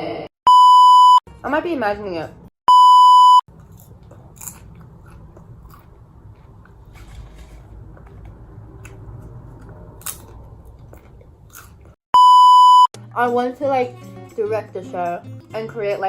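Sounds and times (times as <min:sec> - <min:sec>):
person chewing popcorn: 0:03.5 - 0:12.0.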